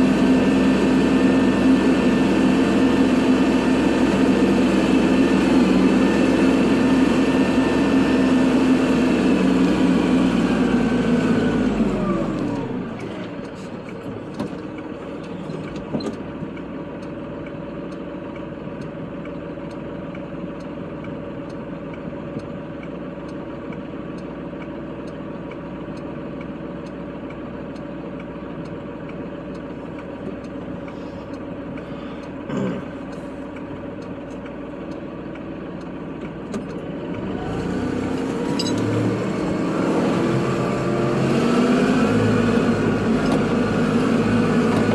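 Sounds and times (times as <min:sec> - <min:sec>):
tractor diesel engine: 0:00.0 - 0:44.9.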